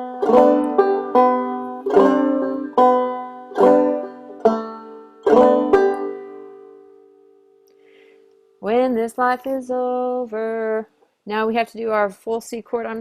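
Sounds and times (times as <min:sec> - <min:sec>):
banjo playing: 0:00.0 - 0:09.2.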